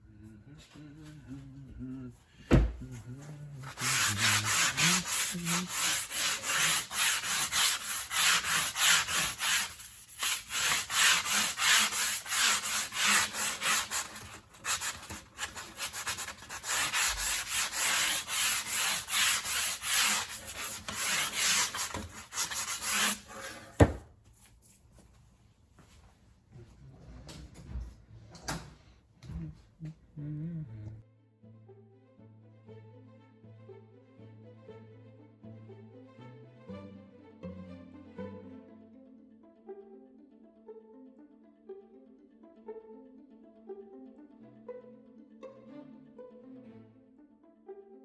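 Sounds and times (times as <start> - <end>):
knock: 2.5 - 2.8
sandpaper sanding pipe: 3.6 - 23.7.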